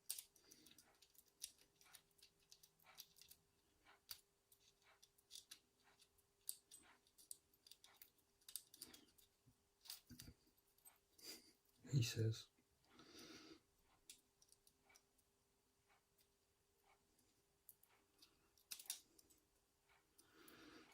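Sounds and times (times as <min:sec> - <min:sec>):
small clicks of pliers: 0:17.7 - 0:19.4.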